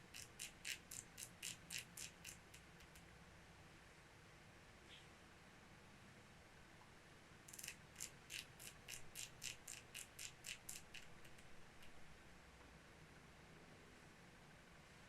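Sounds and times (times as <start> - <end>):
faint small clicks: 0.1 - 3.1.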